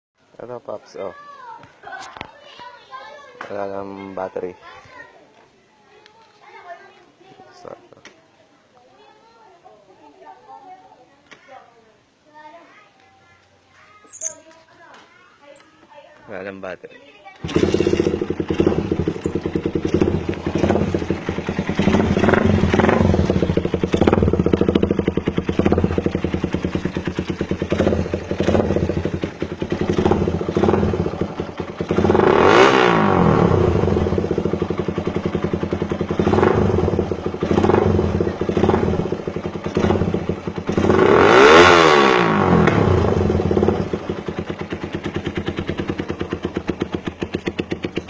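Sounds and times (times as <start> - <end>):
motorcycle engine idling with blips: 17.4 - 48.0
motorcycle engine revving hard: 17.4 - 48.0.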